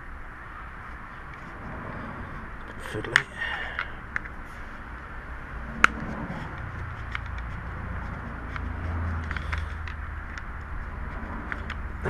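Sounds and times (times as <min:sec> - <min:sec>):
screwdriver ticks and taps: 0:05.8 - 0:11.8.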